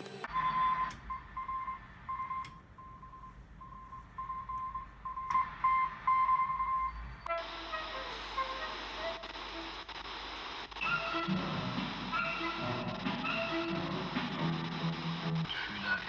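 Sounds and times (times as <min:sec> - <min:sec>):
morse code tone: 0:00.3 - 0:07.8
radio band hiss: 0:07.2 - 0:16.0.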